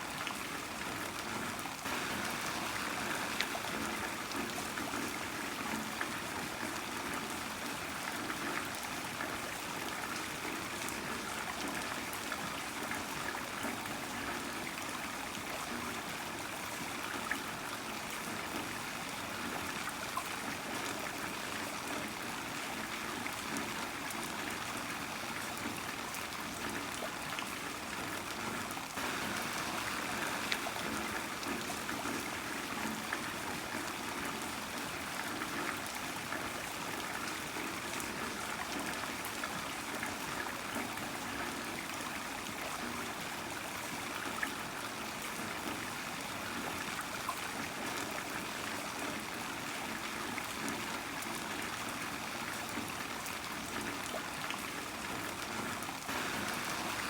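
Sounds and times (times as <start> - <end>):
heavy rain falling: 1.9 - 5.3, 29.0 - 33.6, 56.1 - 57.0.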